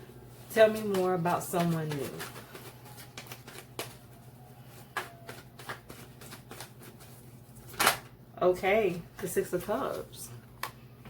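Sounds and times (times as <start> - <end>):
low steady hum: 0.0 - 11.0
cards being shuffled: 0.4 - 8.1.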